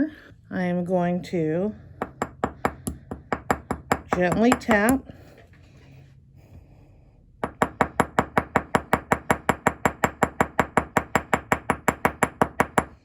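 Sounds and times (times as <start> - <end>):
hammer tapping rivet: 2.0 - 5.0.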